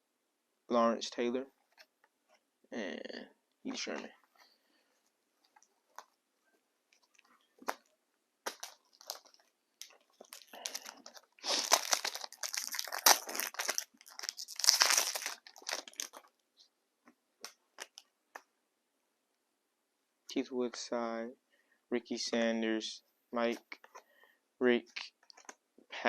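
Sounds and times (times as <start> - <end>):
light clicks and rustles of handling: 3.7 - 7.9, 24.9 - 25.6
card pack wrapper crinkling: 8.4 - 16.3.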